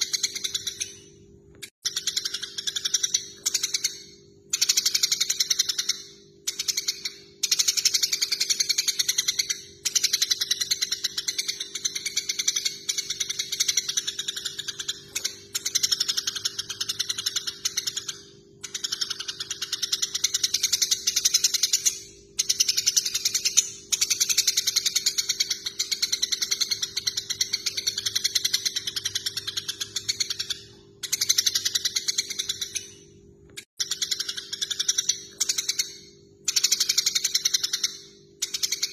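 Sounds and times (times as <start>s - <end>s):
sparrows chattering calls: 4.6s - 33.1s.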